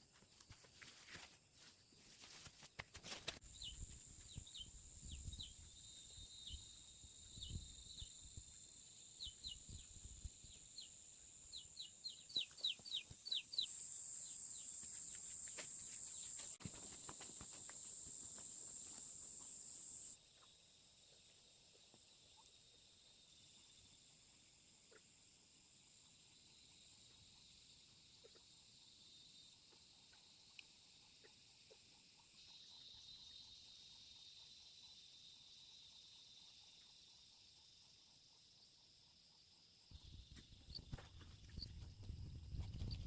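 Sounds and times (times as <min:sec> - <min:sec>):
bird chirps: 0:09.1 - 0:15.2.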